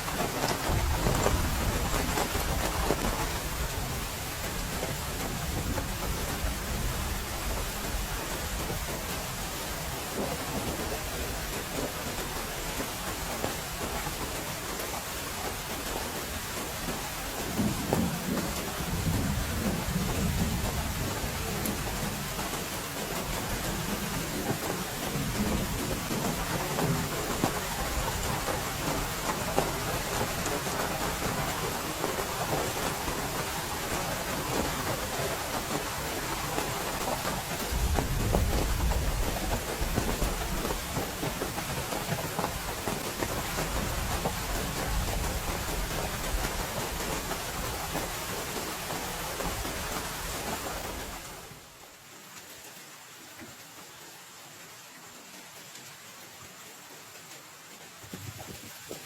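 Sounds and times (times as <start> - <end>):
heavy rain falling: 0.0 - 59.0.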